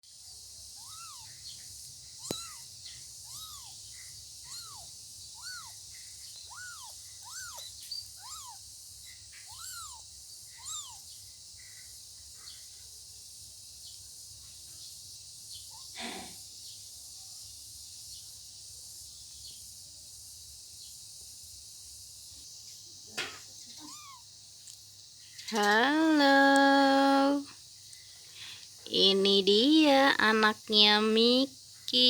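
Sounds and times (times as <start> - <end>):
steady high hiss: 0.1 - 32.0
kittens meowing: 0.8 - 1.4, 2.2 - 8.7, 9.3 - 11.1, 23.7 - 24.3
click: 2.2 - 2.5.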